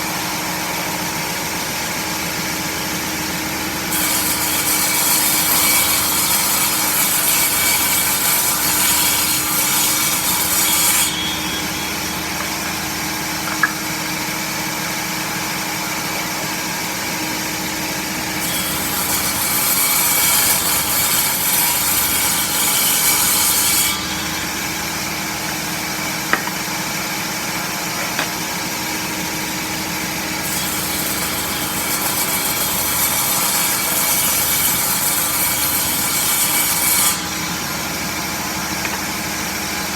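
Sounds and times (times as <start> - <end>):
saw cutting wood: 0.0 - 39.9.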